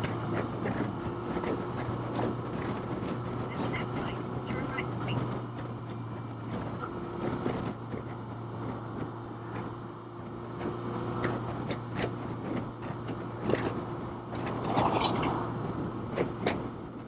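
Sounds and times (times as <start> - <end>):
wind noise on microphone: 0.0 - 9.8, 10.6 - 17.0
motorcycle engine cruising: 0.0 - 17.0.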